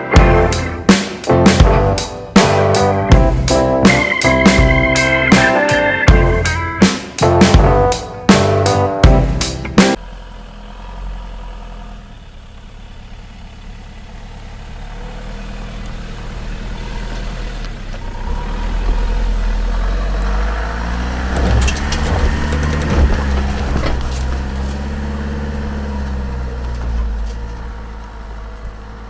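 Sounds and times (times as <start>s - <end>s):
vehicle engine running: 0.1s - 5.4s, 6.1s - 29.0s.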